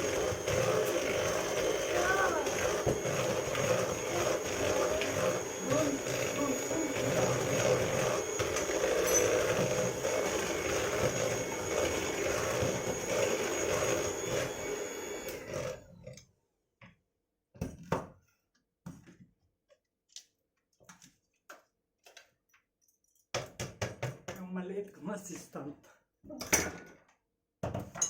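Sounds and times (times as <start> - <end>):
electric mixer running: 0.0 - 15.9.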